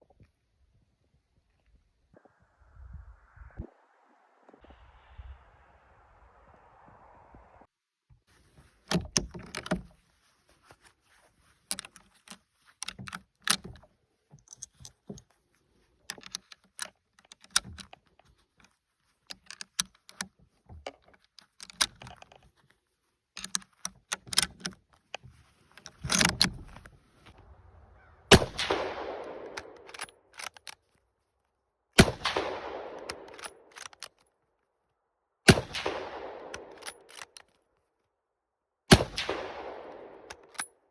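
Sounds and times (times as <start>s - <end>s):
rifle bolt clicking: 11.7s - 13.8s, 16.1s - 18.7s, 21.0s - 22.4s, 23.4s - 24.8s, 25.8s - 26.9s, 28.3s - 30.8s, 32.0s - 34.2s, 35.5s - 37.6s, 38.9s - 40.7s
rifle shots echoing: 28.0s - 30.0s, 32.0s - 33.7s, 35.5s - 37.1s, 38.9s - 40.5s.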